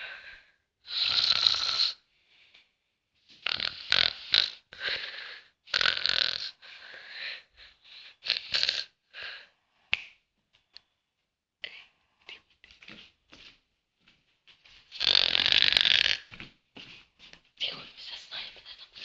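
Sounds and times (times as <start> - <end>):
man snoring and snorting: 0.9 - 2.0, 3.4 - 6.7, 8.1 - 9.0, 14.9 - 16.3.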